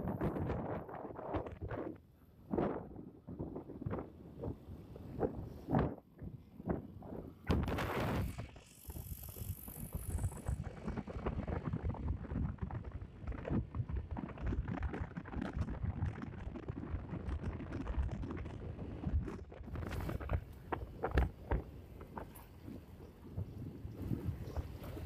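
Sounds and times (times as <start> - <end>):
motorcycle road rumble: 0.0 - 25.0
wind buffeting: 0.0 - 25.0.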